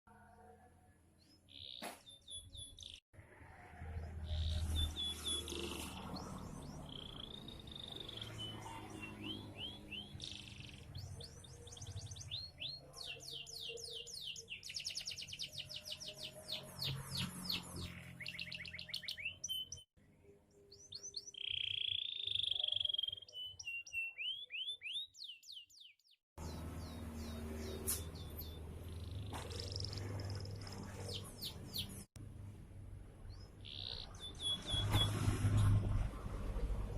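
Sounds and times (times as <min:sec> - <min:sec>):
canary singing trills: 0:04.2 - 0:19.8, 0:20.6 - 0:32.1, 0:33.3 - 0:35.2.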